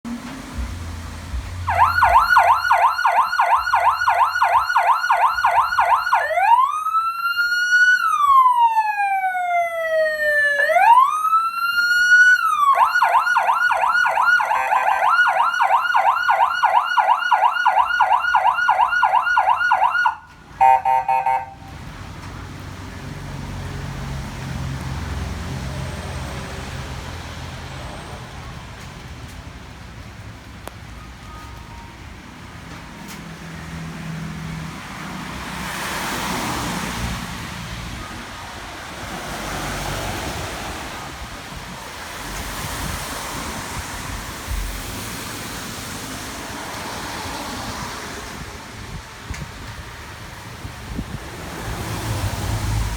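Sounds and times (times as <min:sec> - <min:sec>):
electronic siren yelp and wail: 0:01.7 - 0:21.6.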